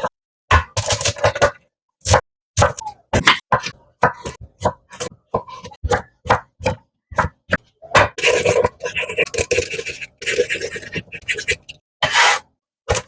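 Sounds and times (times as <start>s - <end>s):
knife scraping cutting board: 3.2s - 5.8s, 8.2s - 12.5s
knife chopping on cutting board: 3.2s - 8.7s.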